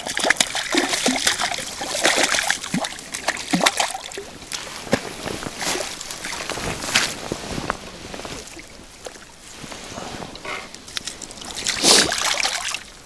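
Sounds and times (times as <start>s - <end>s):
fish splashing in water: 0.0s - 5.0s, 10.9s - 13.0s.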